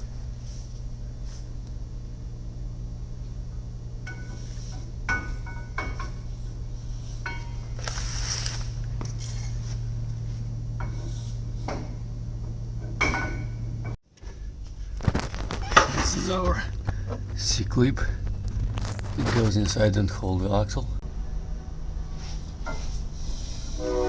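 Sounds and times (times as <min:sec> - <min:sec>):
steady low hum: 0:00.0 - 0:24.0
metal scrape: 0:05.9 - 0:11.7, 0:22.0 - 0:24.0
metal parts clinking: 0:07.3 - 0:09.6.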